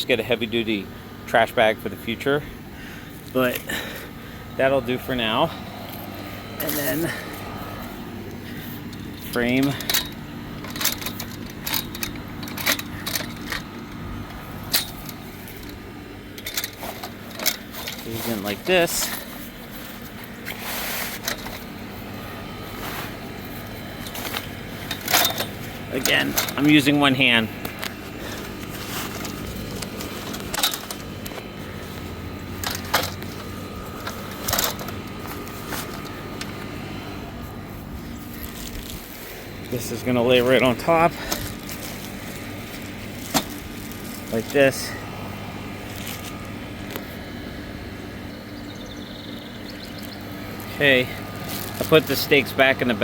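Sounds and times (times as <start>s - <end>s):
steady low hum: 0.0s - 53.0s
canopy parts rustling and clattering: 8.4s - 36.8s, 37.4s - 45.0s.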